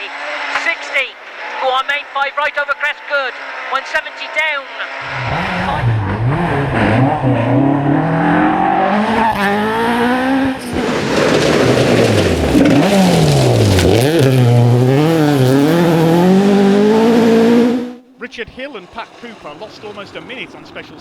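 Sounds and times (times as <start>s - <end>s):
rally car engine revving: 0.0s - 21.0s
tyre noise: 10.5s - 20.6s.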